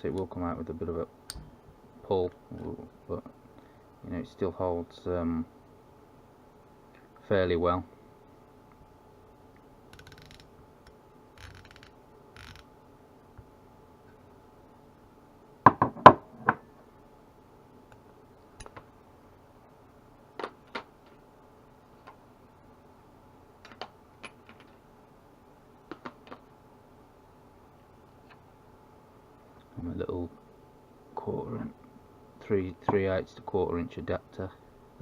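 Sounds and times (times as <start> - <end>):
ratchet and sockets clicking: 9.9 - 10.5, 11.4 - 12.6.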